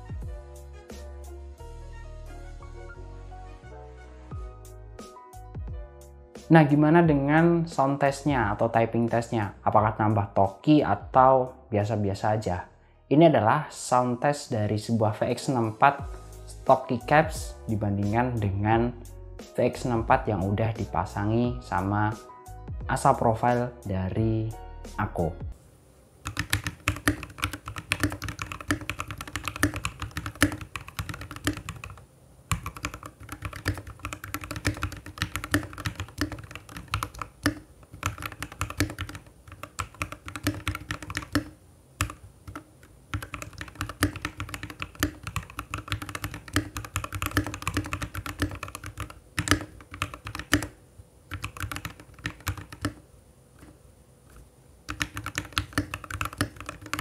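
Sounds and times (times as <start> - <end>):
mechanical keyboard typing: 26.2 - 53.0, 54.9 - 57.0.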